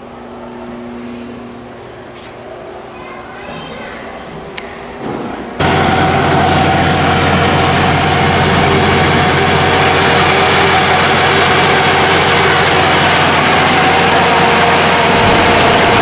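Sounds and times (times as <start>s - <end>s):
heavy engine running: 5.6s - 16.0s.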